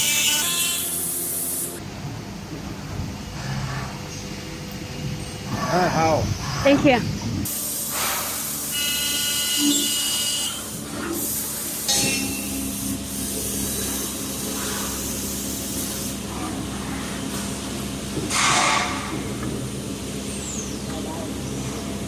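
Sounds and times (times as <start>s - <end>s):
workshop machinery humming: 0.0s - 22.0s
short loud hiss: 7.6s - 8.9s.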